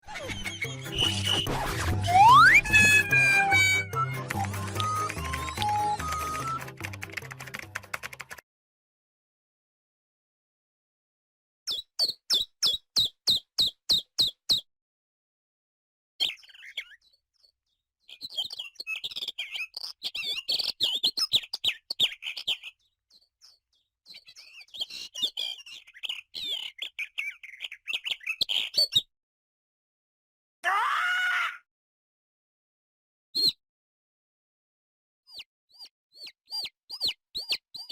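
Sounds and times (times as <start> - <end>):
small birds chirping: 0.2 - 1.5, 11.7 - 14.7, 16.2 - 29.1, 33.4 - 33.6, 35.3 - 37.9.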